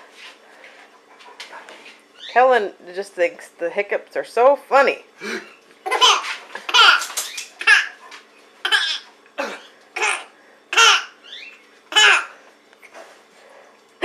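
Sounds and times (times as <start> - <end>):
baby laughing: 5.8 - 8.0, 8.6 - 9.1, 10.0 - 11.2, 11.9 - 12.3.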